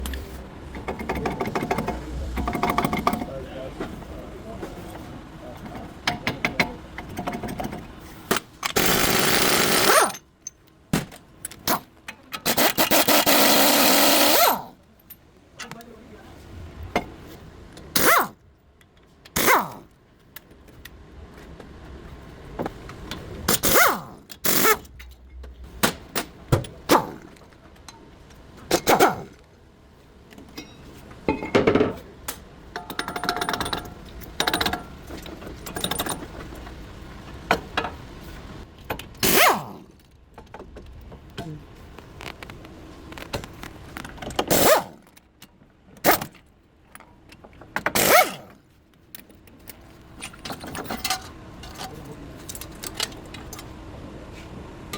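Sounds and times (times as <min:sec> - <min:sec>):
tools clanking and scraping metal: 0:00.0 - 0:10.7, 0:30.3 - 0:32.1, 0:32.7 - 0:36.8, 0:46.0 - 0:53.7.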